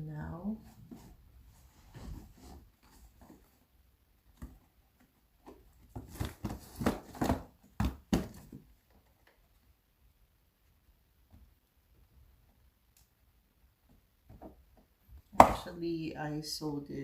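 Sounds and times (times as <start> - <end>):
cardboard scraping and rustling: 5.5 - 7.6.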